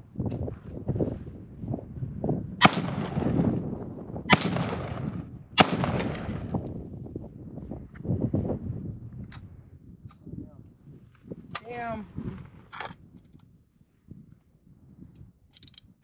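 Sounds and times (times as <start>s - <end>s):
rifle shots: 2.6s - 3.6s, 4.3s - 6.8s
rolling echo: 2.6s - 7.1s.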